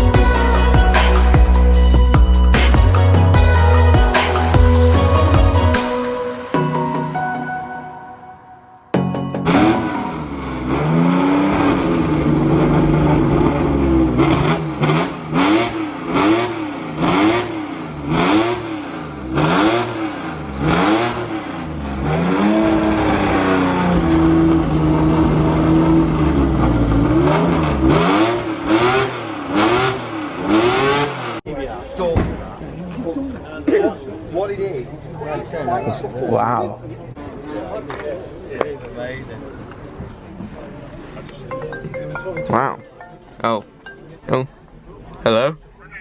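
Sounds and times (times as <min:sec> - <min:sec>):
car engine revving: 0:09.4 - 0:31.4.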